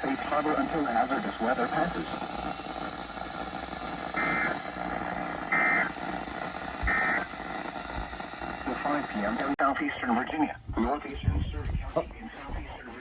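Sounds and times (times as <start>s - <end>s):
warbling data bursts: 0.0s - 9.4s
radio hiss: 0.0s - 13.0s.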